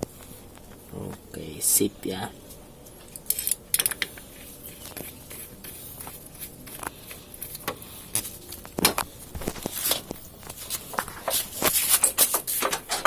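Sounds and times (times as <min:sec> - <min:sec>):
objects being handled clicking: 0:03.0 - 0:05.2.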